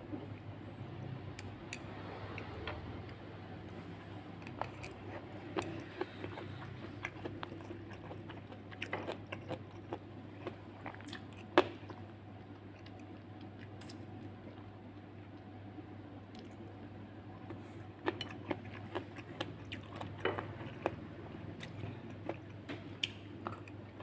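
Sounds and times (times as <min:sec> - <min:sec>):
chewing and crunching food: 0:04.4 - 0:15.5, 0:17.4 - 0:24.0.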